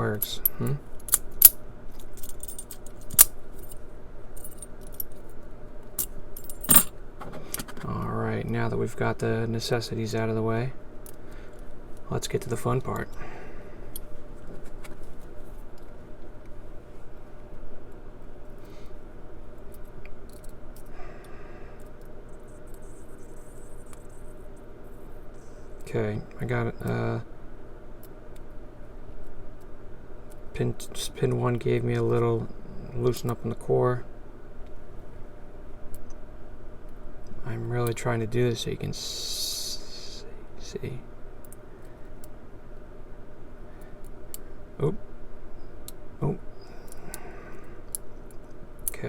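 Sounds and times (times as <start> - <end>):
steady low hum: 0.0 - 49.0
keys jangling: 2.1 - 3.8, 6.0 - 6.9.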